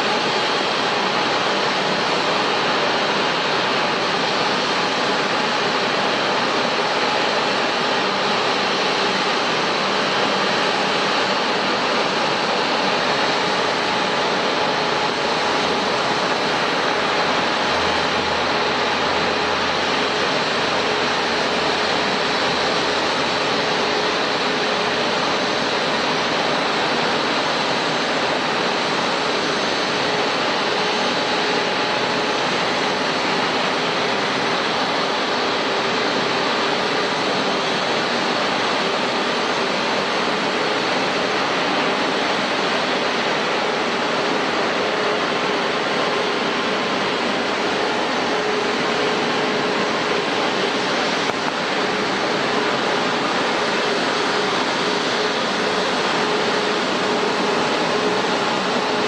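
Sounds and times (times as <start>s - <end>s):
jet engines running: 0.0s - 59.0s.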